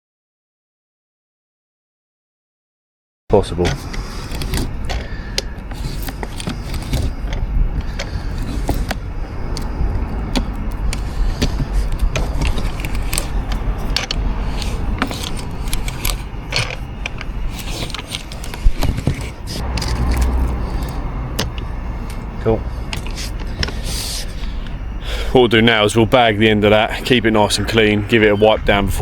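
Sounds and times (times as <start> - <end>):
metallic clicks and scrapes: 3.6 - 24.8
low rumble: 6.8 - 29.0.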